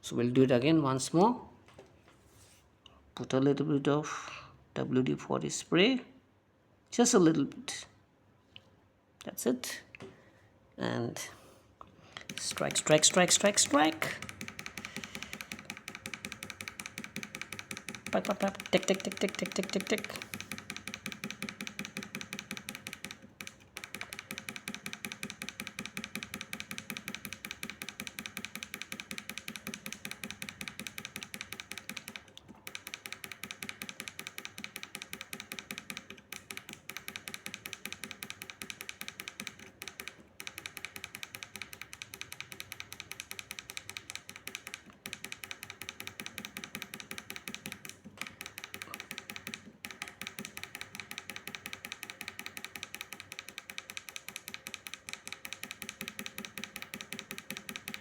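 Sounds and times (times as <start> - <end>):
micro switches clicking: 12.2 - 58.0.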